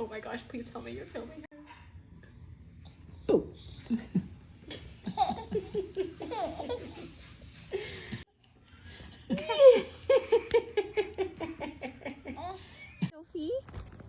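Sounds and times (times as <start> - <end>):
baby laughing: 5.0 - 7.3.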